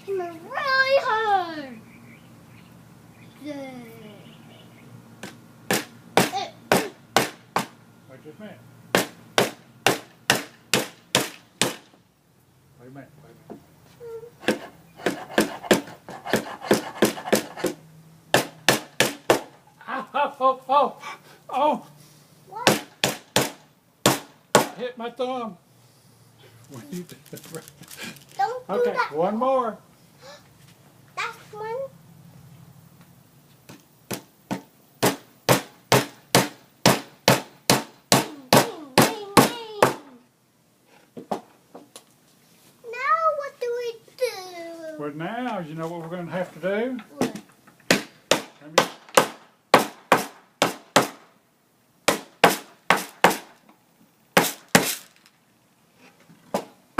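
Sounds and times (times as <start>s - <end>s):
hammer driving nail into wood: 9.0s - 11.8s, 14.4s - 17.8s, 47.9s - 51.2s, 52.1s - 53.5s, 54.4s - 55.0s.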